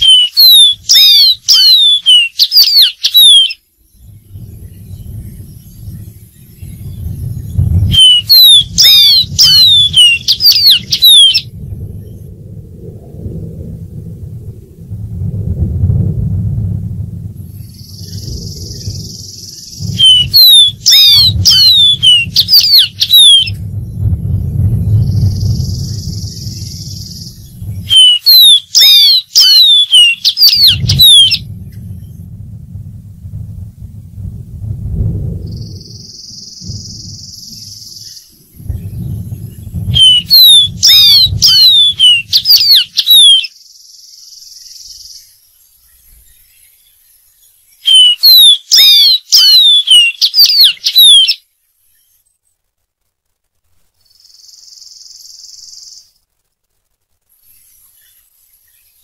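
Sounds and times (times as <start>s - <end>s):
bird singing whistled notes: 0.0s - 12.3s, 17.4s - 32.2s, 35.4s - 52.3s, 54.0s - 56.2s
steady high hiss: 0.0s - 13.0s, 15.9s - 49.3s, 50.2s - 59.0s
low rumble: 3.7s - 28.3s, 30.4s - 43.0s.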